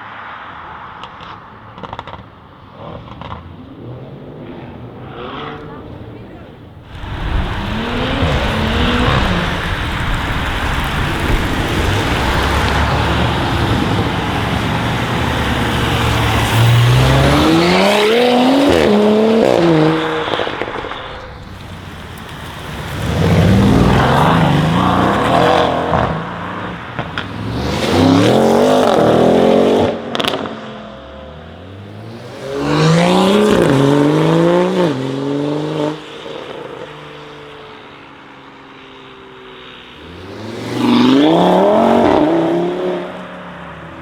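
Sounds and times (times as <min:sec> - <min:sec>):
car engine accelerating hard: 0:01.0 - 0:37.2, 0:39.8 - 0:44.0
exhaust pop: 0:04.6 - 0:29.0.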